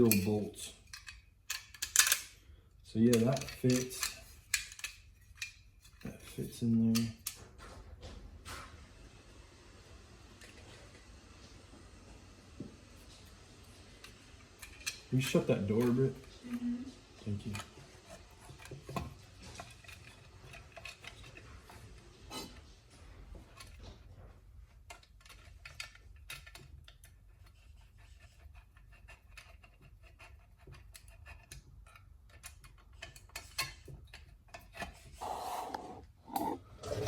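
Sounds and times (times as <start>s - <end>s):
small metal parts clicking: 0.0s - 2.4s, 3.1s - 7.4s, 14.6s - 16.0s, 24.9s - 27.1s.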